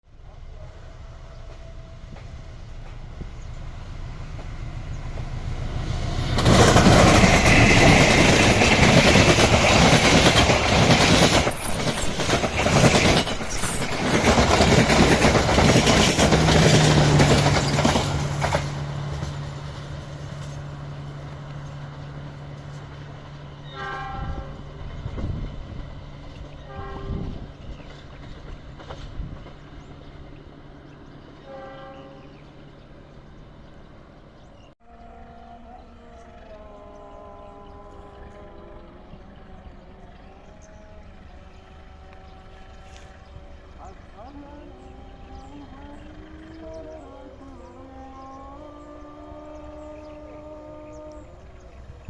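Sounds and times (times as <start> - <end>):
train rushing and rumbling past: 0.0 - 35.2, 35.9 - 52.0
train horn toots: 6.5 - 25.7, 26.4 - 27.8, 31.4 - 32.4, 34.8 - 43.3, 44.2 - 52.0.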